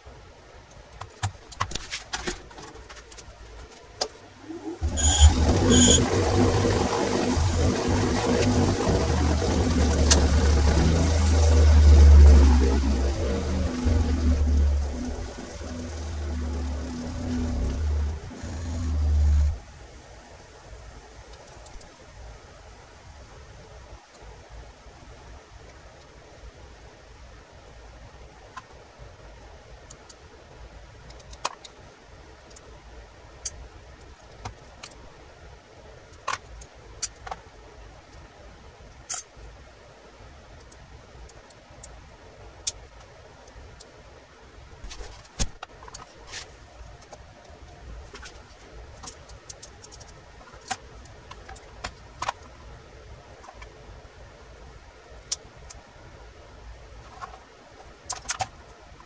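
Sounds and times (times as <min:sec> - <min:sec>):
faint steady hiss: 0:00.0 - 0:59.0.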